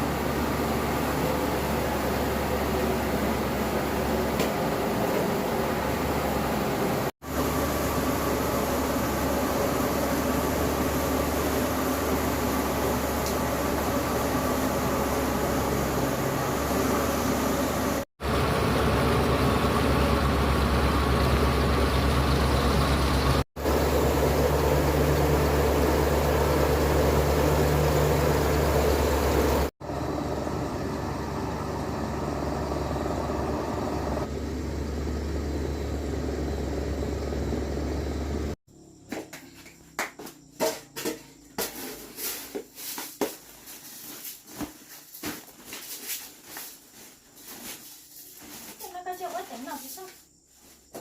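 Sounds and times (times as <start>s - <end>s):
engine running with low hum: 0.0s - 38.6s.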